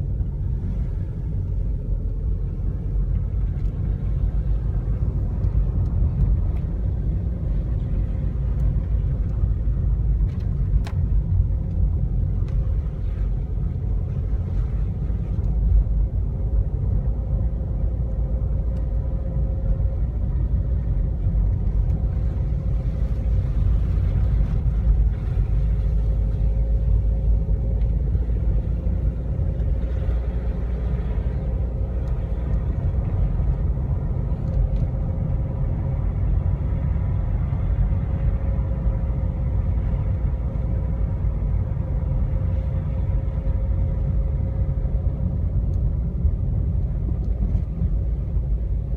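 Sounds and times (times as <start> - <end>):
car engine and road rumble: 0.0 - 48.9
faint steady hum: 0.0 - 48.9
light ticks: 3.1 - 4.4, 5.3 - 7.1, 7.7 - 9.5, 10.2 - 12.8, 18.1 - 19.9, 21.4 - 22.2, 29.5 - 33.6, 34.2 - 35.4, 45.6 - 45.9, 46.7 - 47.8.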